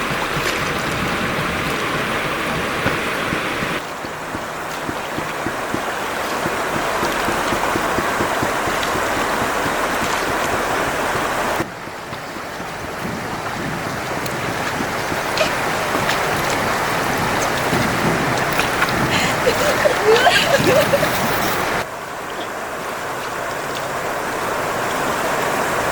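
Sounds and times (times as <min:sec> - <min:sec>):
river water rushing: 0:00.0 - 0:25.9.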